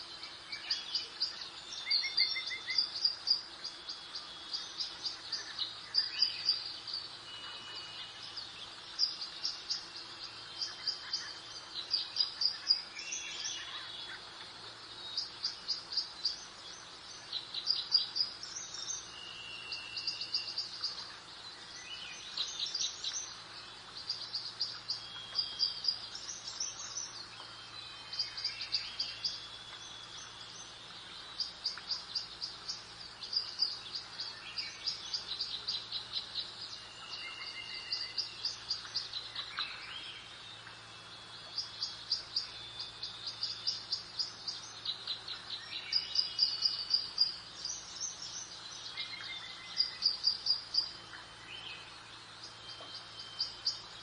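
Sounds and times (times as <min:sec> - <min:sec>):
birds chirping trills: 0:00.0 - 0:54.0
soft steady hiss: 0:00.0 - 0:54.0
whistled bird notes: 0:31.4 - 0:40.7.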